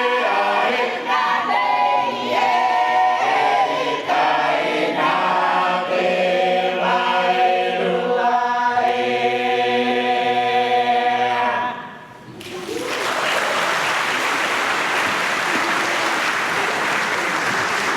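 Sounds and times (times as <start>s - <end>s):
choir singing a cappella: 0.0s - 12.2s
audience applause: 12.4s - 17.9s.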